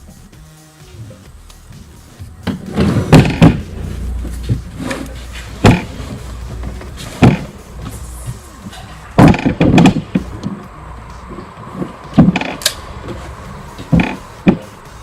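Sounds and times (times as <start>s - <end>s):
low rumble: 2.2s - 15.0s
loud sharp thumps and bangs: 2.4s - 10.6s, 11.8s - 14.8s.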